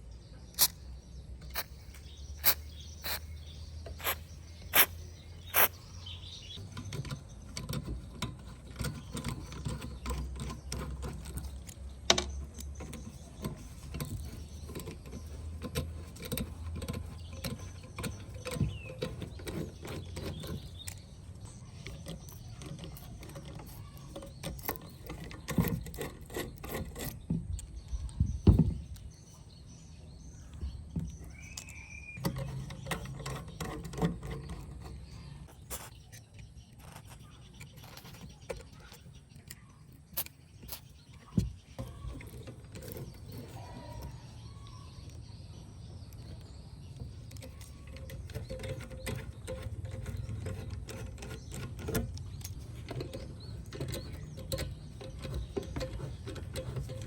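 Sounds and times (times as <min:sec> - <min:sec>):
clicks and taps of tools: 0:06.6 - 0:29.1.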